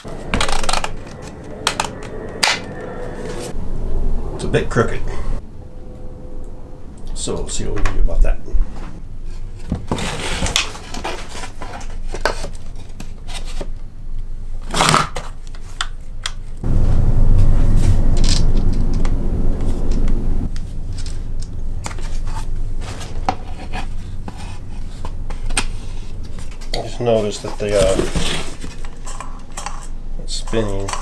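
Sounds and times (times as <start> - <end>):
steady low running sound: 0.0 - 9.1, 16.6 - 26.6.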